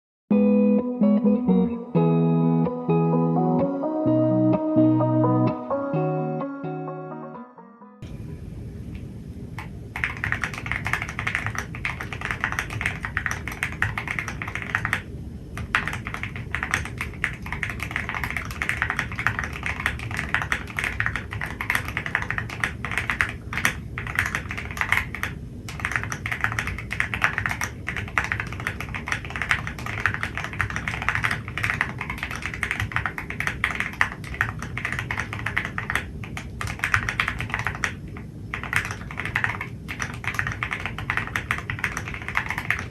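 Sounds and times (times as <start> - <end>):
mechanical keyboard typing: 9.6 - 42.9.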